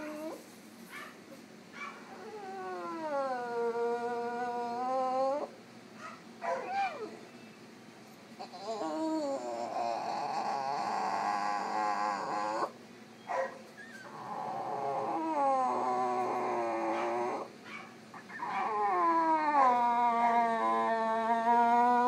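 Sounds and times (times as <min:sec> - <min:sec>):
dog howling and whining: 0:00.0 - 0:00.4, 0:01.8 - 0:05.6, 0:06.4 - 0:07.4, 0:08.4 - 0:22.0
dog yelp: 0:00.0 - 0:01.2, 0:01.8 - 0:02.4, 0:05.2 - 0:07.3, 0:08.4 - 0:22.0.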